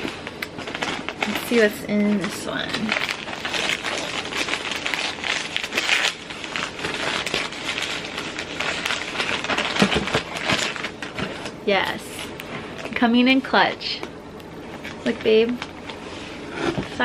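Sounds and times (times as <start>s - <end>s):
paper crinkling and rustling: 0.0s - 13.0s.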